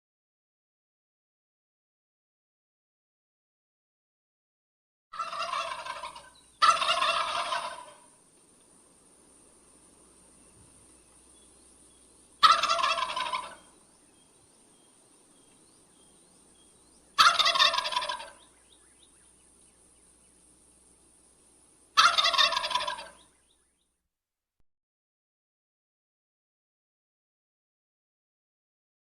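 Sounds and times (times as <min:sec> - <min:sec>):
turkey gobbling: 0:05.1 - 0:08.2, 0:12.4 - 0:13.8, 0:17.1 - 0:19.1, 0:22.0 - 0:23.3.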